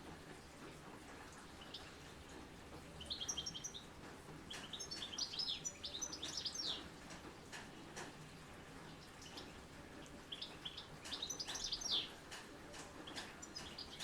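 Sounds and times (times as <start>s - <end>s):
faint patter of light rain: 0.0s - 14.0s
songbirds chirping: 3.0s - 6.9s, 8.6s - 14.0s.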